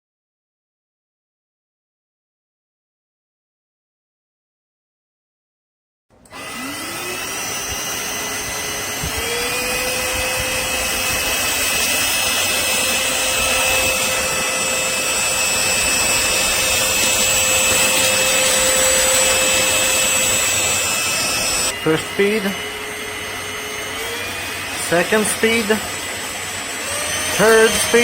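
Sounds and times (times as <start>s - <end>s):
vacuum cleaner whining: 6.1s - 28.0s.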